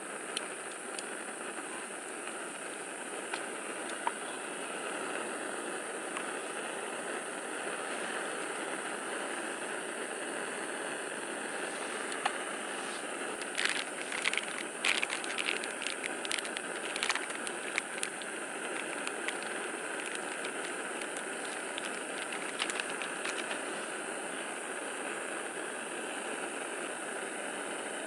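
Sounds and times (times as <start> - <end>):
crackles and pops of frying: 10.9 - 23.8.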